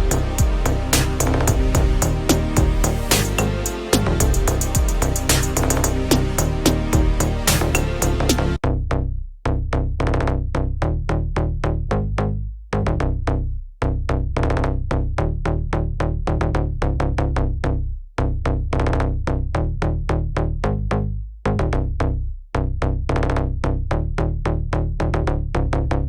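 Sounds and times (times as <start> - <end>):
electronic music with heavy bass: 0.0 - 8.6.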